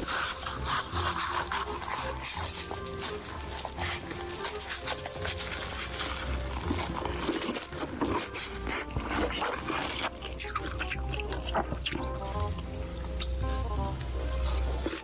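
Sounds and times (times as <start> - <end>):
quiet background music: 0.0 - 15.0
wet chewing and mouth smacking: 0.0 - 15.0.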